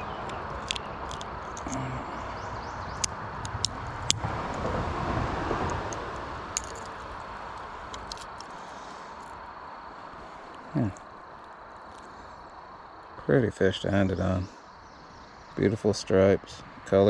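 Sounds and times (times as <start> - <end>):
steady rushing background noise: 0.0 - 17.0
metallic clicks of lure and hook: 0.2 - 1.9, 3.0 - 4.2, 6.6 - 8.6.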